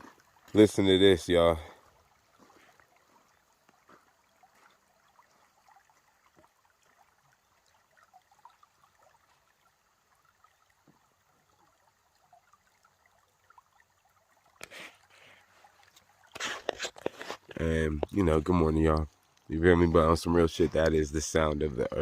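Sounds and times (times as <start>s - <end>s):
creek trickling: 0.0s - 22.0s
rustle: 14.6s - 17.6s.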